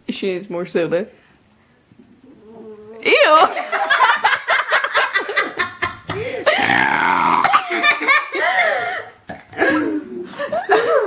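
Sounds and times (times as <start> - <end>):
people laughing: 3.5 - 6.4, 7.5 - 9.0
girl burping: 6.5 - 8.0.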